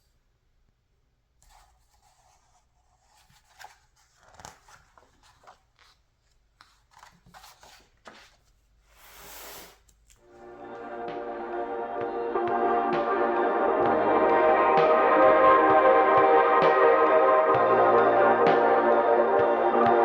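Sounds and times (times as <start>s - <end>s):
magazine pages rustling: 1.5s - 8.8s.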